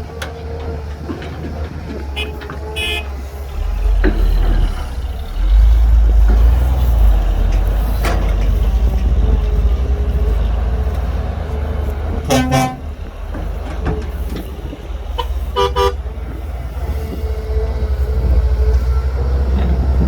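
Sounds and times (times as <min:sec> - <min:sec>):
diesel engine rumbling: 0:00.0 - 0:20.0
horn toots: 0:02.2 - 0:06.1, 0:12.1 - 0:13.0, 0:15.2 - 0:16.1.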